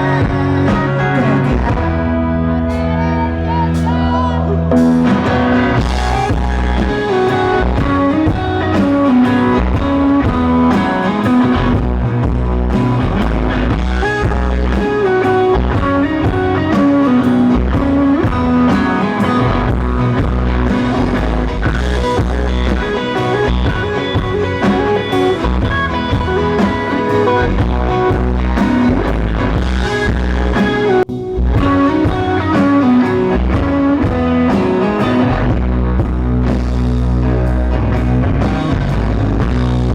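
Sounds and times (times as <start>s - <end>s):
bass: 0.0s - 39.9s
drums: 0.0s - 39.9s
electric guitar lead: 0.0s - 39.9s.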